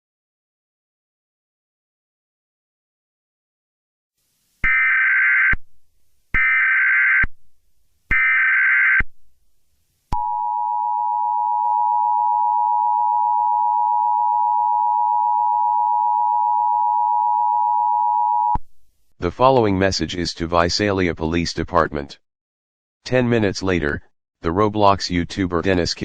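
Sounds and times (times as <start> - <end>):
steady two-tone attention signal: 10.2 - 18.6.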